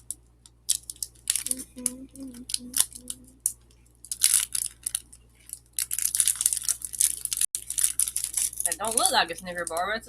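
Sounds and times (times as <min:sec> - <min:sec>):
plastic wrapper crinkling: 0:00.0 - 0:10.0
plastic wrapper ripping: 0:00.7 - 0:01.6, 0:02.5 - 0:03.5, 0:04.1 - 0:09.8.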